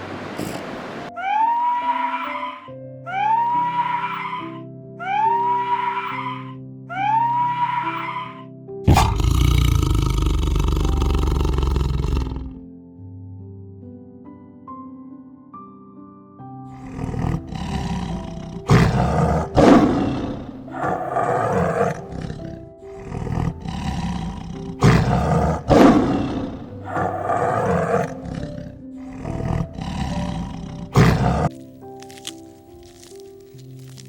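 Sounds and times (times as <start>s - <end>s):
soft background music: 0.0s - 34.0s
big cat roaring and growling: 8.9s - 12.6s, 16.7s - 31.5s.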